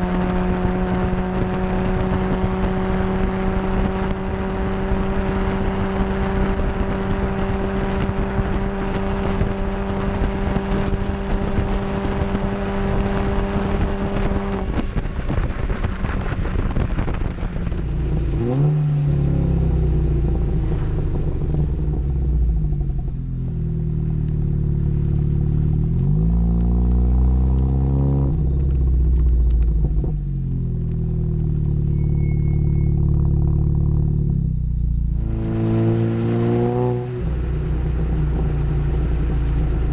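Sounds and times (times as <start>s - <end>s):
wind noise: 0.0s - 23.2s
car engine: 0.0s - 39.9s
road noise: 0.0s - 39.9s.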